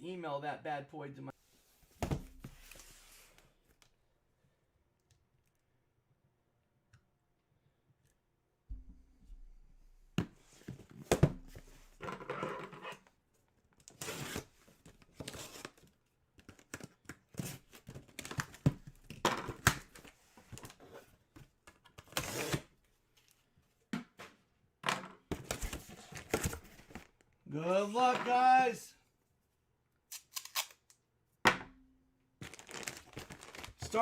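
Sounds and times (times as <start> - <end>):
packaging tearing and crinkling: 30.1 - 30.9, 32.4 - 34.0.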